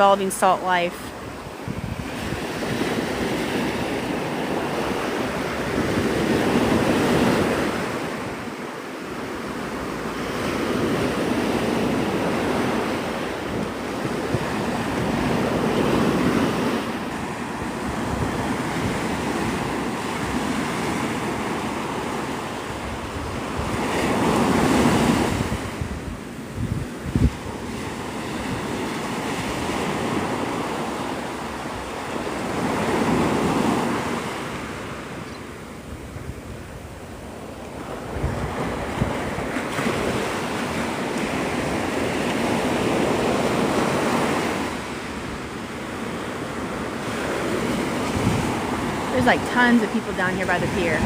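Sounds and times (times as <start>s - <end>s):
surf breaking on beach: 0.0s - 35.2s, 36.3s - 51.0s
wind buffeting microphone: 0.0s - 51.0s.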